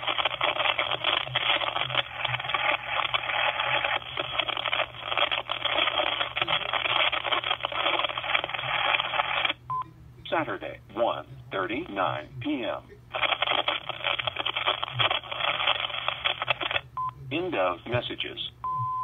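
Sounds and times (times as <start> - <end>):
telephone line static hiss: 0.0 - 19.0
answering machine beep: 18.6 - 19.0.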